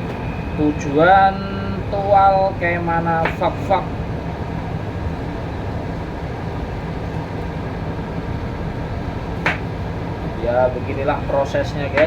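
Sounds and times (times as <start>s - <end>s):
heavy machinery drone: 0.0s - 12.0s.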